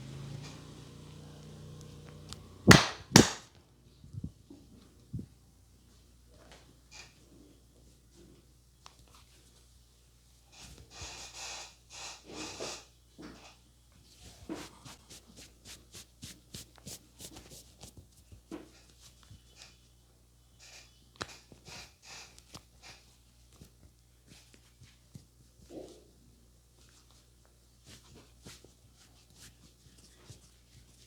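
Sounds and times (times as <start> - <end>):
hands rubbing hair: 14.4 - 19.2.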